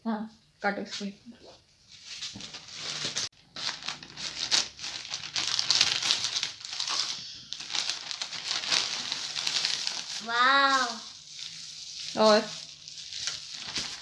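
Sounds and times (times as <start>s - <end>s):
packaging crinkling and rustling: 1.9s - 14.0s.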